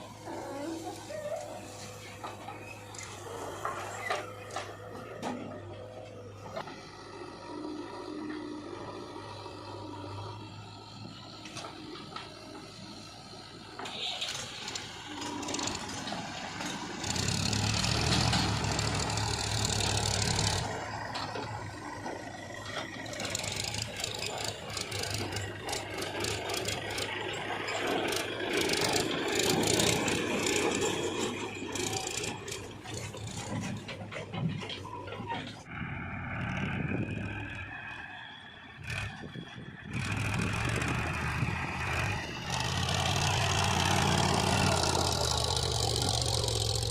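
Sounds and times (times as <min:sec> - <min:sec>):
diesel engine under load: 0:00.0 - 0:46.9
rattling and clanking: 0:13.8 - 0:35.7.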